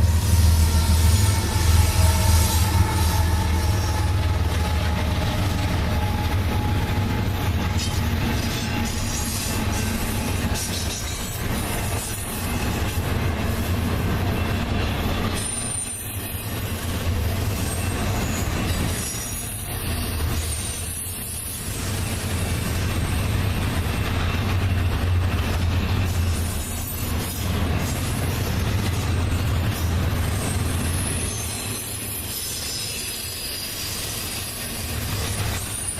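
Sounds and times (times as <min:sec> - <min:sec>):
high wheel squeal: 0:00.0 - 0:12.8, 0:26.0 - 0:35.9
train wheels rumbling on rail: 0:00.0 - 0:35.9.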